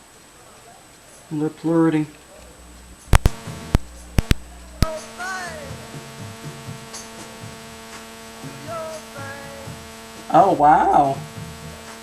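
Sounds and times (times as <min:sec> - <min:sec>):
speaker humming: 0:00.0 - 0:12.0
sharp click: 0:03.0 - 0:04.4.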